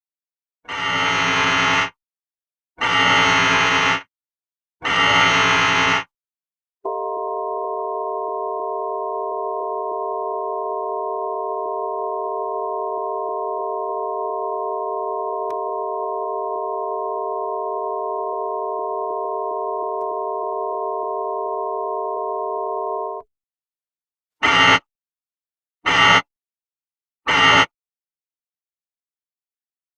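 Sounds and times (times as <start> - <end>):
alert tone chord: 6.9 - 23.2.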